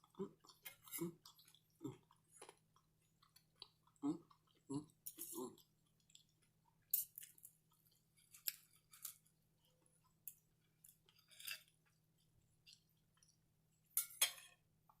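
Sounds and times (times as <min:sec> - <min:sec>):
person chewing with mouth smacks: 0:00.0 - 0:09.0.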